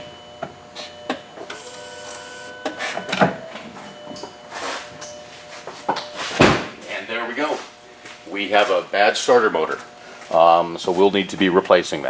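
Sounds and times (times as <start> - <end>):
steady electronic tone: 0.0 - 6.4
ignition clicks and knocks: 2.6 - 4.4.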